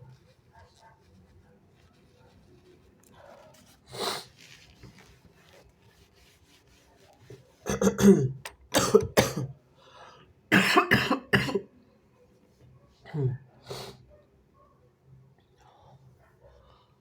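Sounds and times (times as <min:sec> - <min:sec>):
person coughing: 0:07.7 - 0:09.6, 0:10.5 - 0:11.7.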